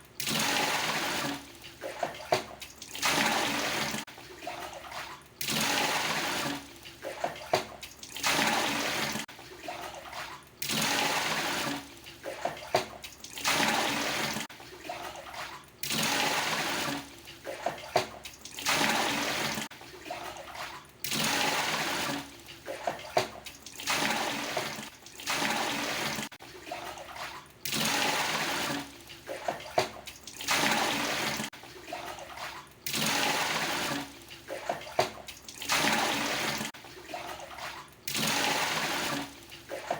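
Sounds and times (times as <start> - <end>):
dipper scooping water: 0.0 - 39.9
water pouring: 0.0 - 39.9.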